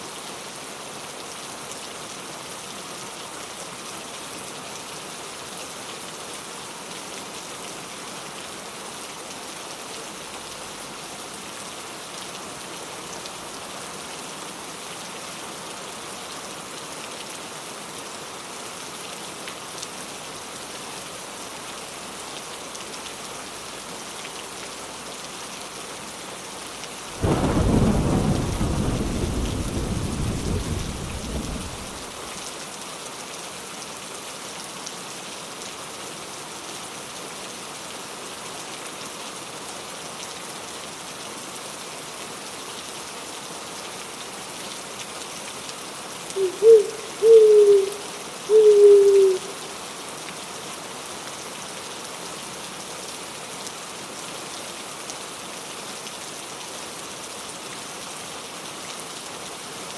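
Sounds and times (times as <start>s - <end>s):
rain falling: 0.0s - 59.9s
thunder clap rumbling: 27.2s - 32.4s.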